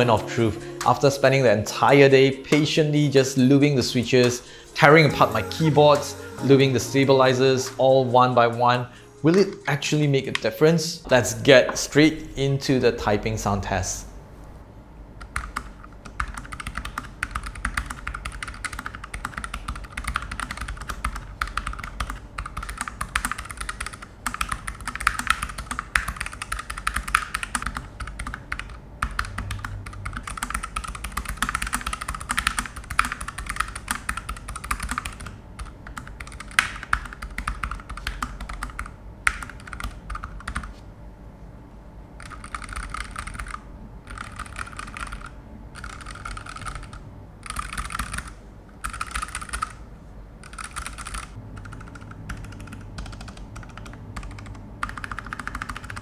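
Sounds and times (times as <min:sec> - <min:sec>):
mechanical keyboard typing: 0:15.2 - 0:40.7, 0:42.2 - 0:49.8, 0:50.4 - 0:56.0.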